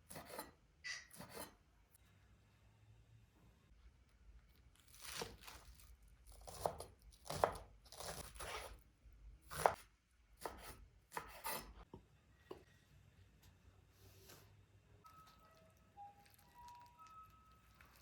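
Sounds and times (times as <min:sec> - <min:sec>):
knife chopping on cutting board: 0:00.1 - 0:00.5, 0:06.4 - 0:08.8, 0:09.5 - 0:09.8, 0:10.4 - 0:11.9.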